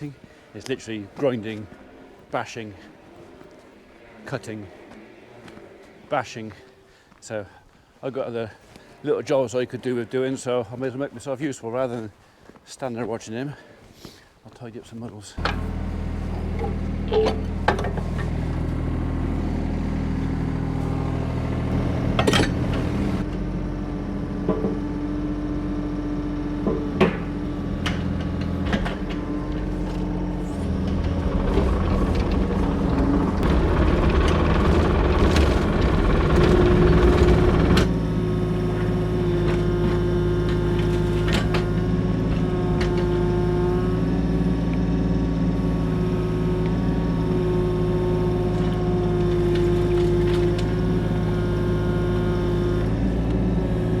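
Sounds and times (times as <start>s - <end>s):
farm vehicle engine running: 15.4s - 54.0s.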